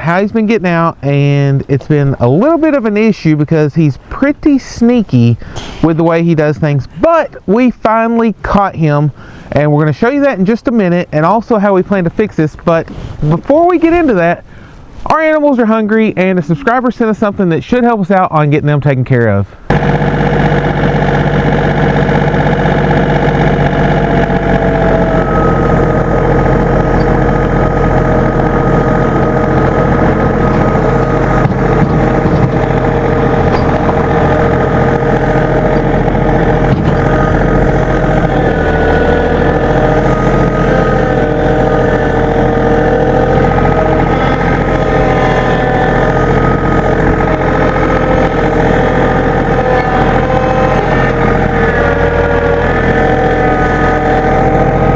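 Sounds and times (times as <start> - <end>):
engine running steadily: 19.5 - 54.9.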